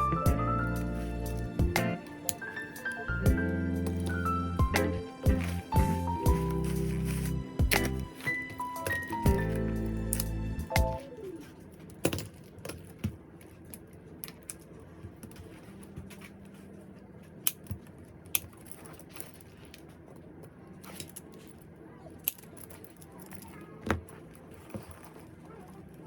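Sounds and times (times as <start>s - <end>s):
small metallic clicks and clinks: 17.4s - 26.0s.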